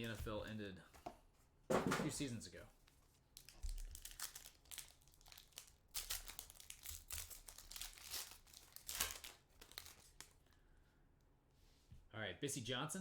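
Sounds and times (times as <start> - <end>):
card pack wrapper crinkling: 3.3 - 10.6.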